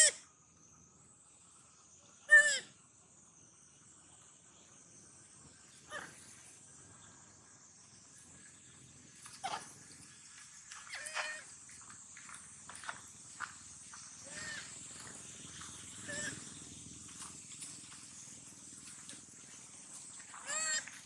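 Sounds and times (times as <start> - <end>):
baby monkey crying: 10.9 - 11.5, 14.3 - 14.7, 16.0 - 16.4, 20.4 - 20.9.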